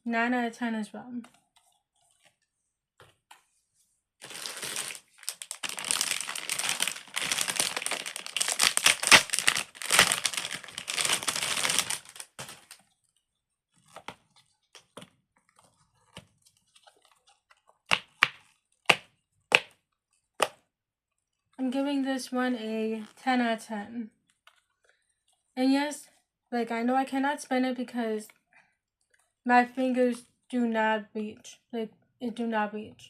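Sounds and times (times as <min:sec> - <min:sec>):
plastic packaging crinkling: 0:04.2 - 0:18.8.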